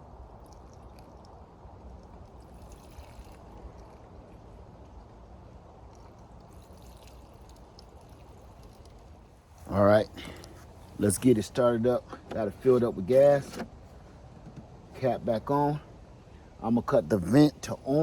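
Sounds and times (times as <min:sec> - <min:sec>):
gasoline pouring into tank: 0:02.3 - 0:04.0, 0:06.4 - 0:09.1.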